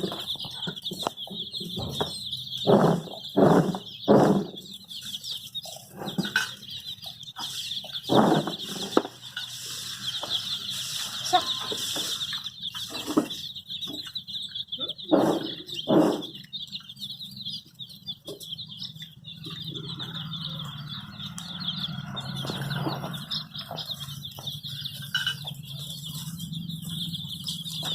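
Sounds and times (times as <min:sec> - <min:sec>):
loud knocks: 0:00.0 - 0:04.7, 0:15.1 - 0:16.4
baby chicks peeping: 0:00.0 - 0:27.9.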